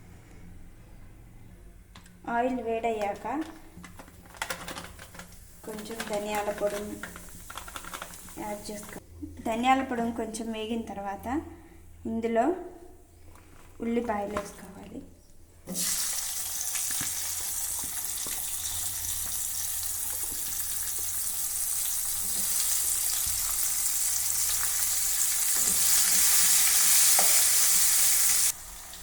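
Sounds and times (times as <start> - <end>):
onions sizzling in oil: 15.7 - 29.0.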